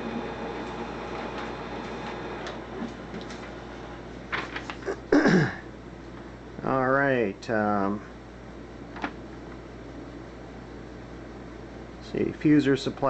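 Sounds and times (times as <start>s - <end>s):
laser printer humming and ticking: 0.0s - 4.0s.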